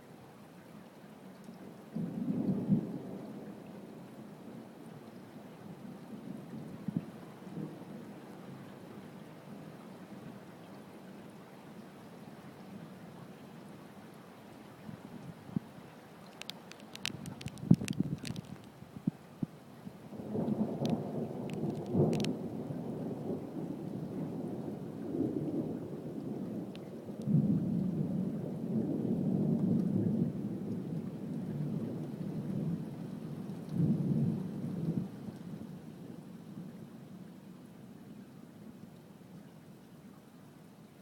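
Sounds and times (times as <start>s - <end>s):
rain falling: 0.0s - 41.0s
thunder rumbling and cracking: 16.4s - 18.7s, 20.2s - 35.7s.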